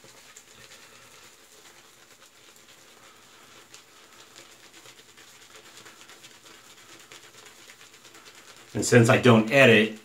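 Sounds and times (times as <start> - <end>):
shaving brush scrubbing soap: 0.0 - 10.0.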